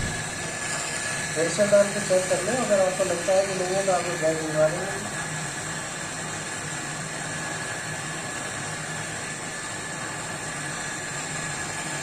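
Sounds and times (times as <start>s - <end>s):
low drone: 0.0s - 1.6s
background hum and hiss: 0.0s - 12.0s.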